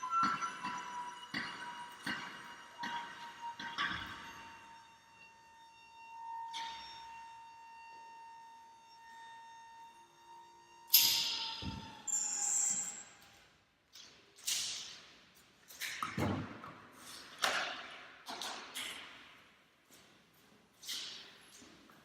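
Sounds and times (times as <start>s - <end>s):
ringing knocks and taps: 0.2s - 4.3s.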